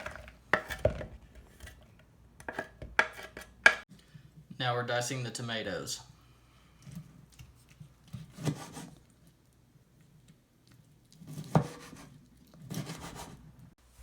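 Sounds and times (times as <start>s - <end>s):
knife scraping and tapping: 0.0s - 1.8s, 2.4s - 3.8s.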